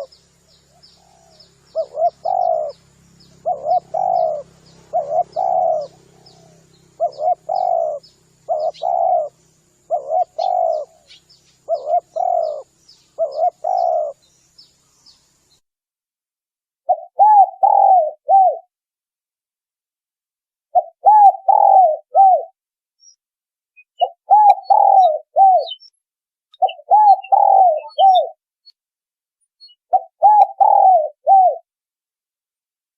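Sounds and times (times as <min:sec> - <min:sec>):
dove cooing: 0:00.0 - 0:14.3, 0:16.9 - 0:18.7, 0:20.8 - 0:22.5, 0:24.0 - 0:25.8, 0:26.6 - 0:28.4, 0:29.9 - 0:31.6
small bird chirping: 0:00.0 - 0:15.6, 0:16.9 - 0:18.7, 0:20.8 - 0:23.2, 0:23.8 - 0:28.8, 0:29.5 - 0:31.6.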